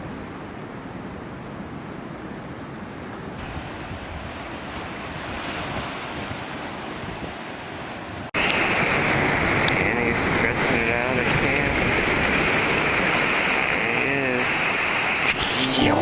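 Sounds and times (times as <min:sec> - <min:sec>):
ocean surf: 0:00.0 - 0:16.0
wind buffeting microphone: 0:03.4 - 0:07.4.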